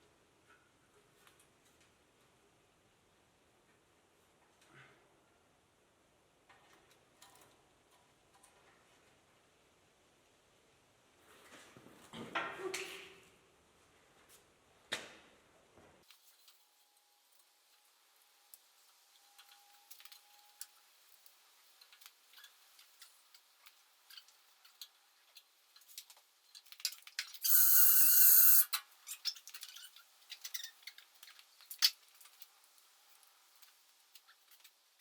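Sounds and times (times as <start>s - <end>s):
loud rasping hiss: 27.5s - 28.7s.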